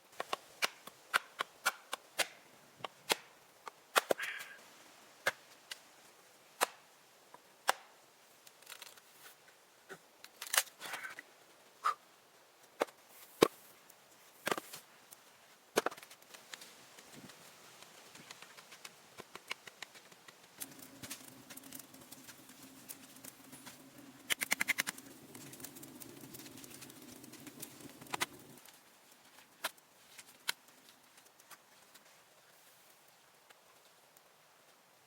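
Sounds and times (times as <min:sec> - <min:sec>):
wood crackling: 0:08.4 - 0:09.2, 0:12.6 - 0:32.1.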